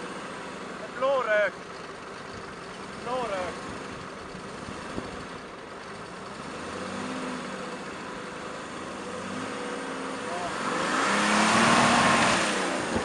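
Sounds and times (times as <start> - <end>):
off-road vehicle engine running: 0.0 - 13.0.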